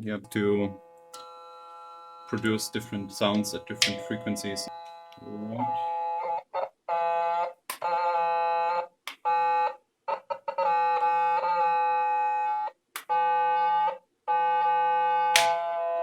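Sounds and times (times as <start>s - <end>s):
buzzy electronic organ tone: 0.0s - 6.0s.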